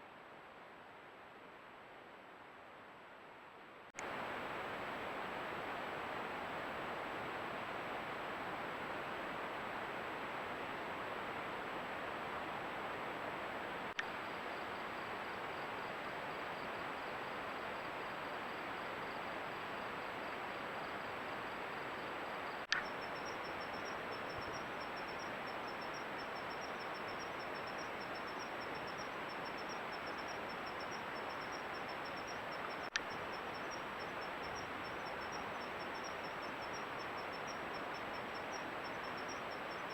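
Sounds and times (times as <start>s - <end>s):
microphone hiss: 0.0s - 39.9s
cricket trilling: 14.0s - 39.9s.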